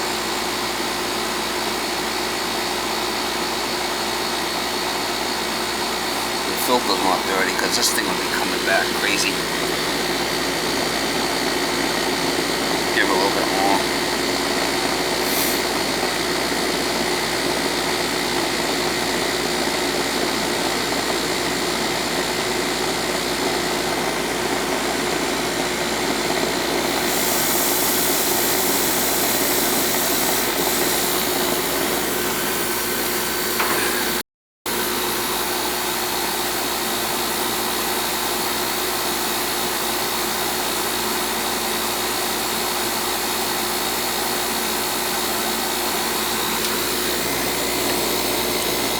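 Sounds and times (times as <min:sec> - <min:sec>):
air conditioning unit humming: 0:06.0 - 0:16.0, 0:45.9 - 0:48.9.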